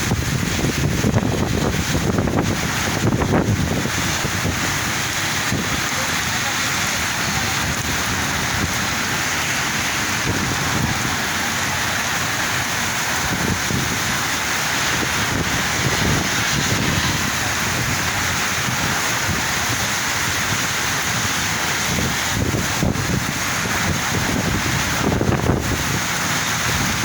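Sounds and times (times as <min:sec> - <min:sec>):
heavy rain falling: 0:00.0 - 0:27.0
wind rumbling on microphone: 0:00.0 - 0:27.0.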